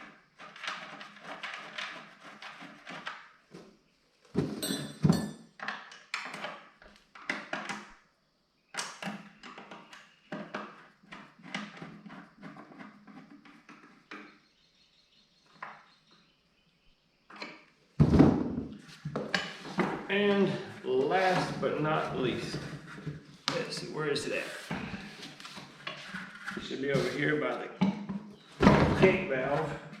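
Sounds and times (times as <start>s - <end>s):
tools and parts knocking: 4.4s - 6.6s.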